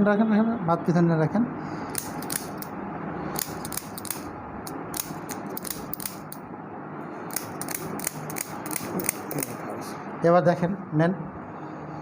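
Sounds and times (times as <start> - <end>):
sharp clicks: 1.9 - 2.7, 3.4 - 6.4, 7.3 - 9.6.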